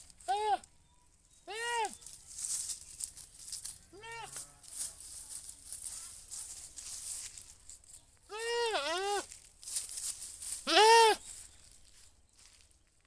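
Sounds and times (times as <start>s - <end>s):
goat bleating: 3.9s - 4.7s, 8.3s - 9.3s, 10.6s - 11.2s.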